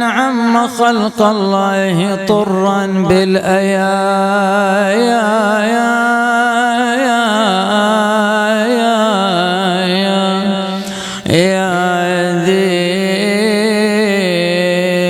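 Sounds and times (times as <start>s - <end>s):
man chanting unaccompanied: 0.0s - 15.0s
quick breath: 10.8s - 11.3s.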